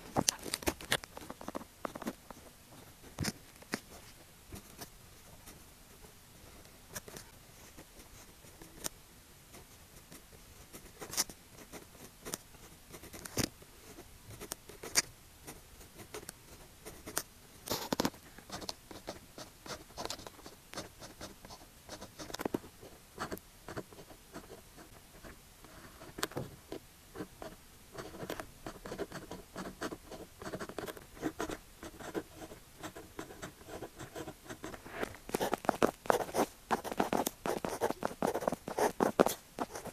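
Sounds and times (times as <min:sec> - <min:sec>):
pen scratching on paper: 0:27.2 - 0:39.9.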